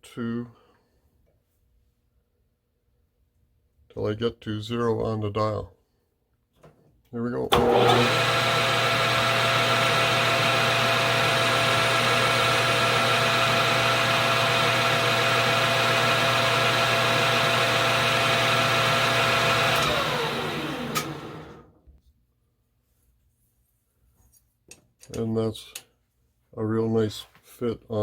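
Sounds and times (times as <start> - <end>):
lathe motor winding down: 7.5 - 21.8
metal lathe running: 7.6 - 21.6.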